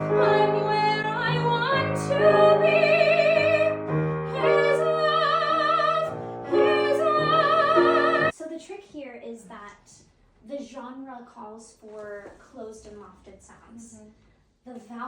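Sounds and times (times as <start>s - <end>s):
classical singing voice with vibrato: 0.0s - 8.3s
piano accompaniment: 0.0s - 8.3s.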